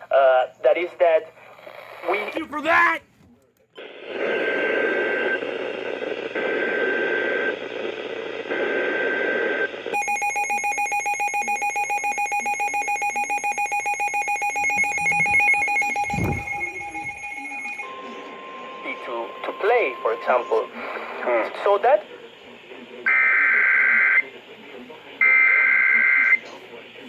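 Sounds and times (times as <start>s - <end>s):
screeching digital data tones: 10.0s - 18.0s
pulsing electronic attention tone: 12.5s - 17.9s.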